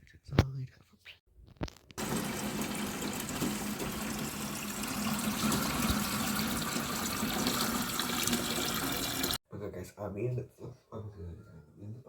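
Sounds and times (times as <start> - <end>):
water running from a tap: 2.0 - 9.4.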